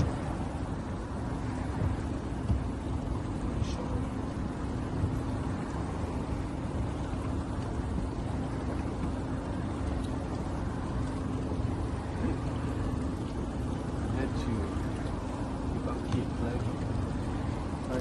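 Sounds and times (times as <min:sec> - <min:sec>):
boat motor running: 0:00.0 - 0:18.0.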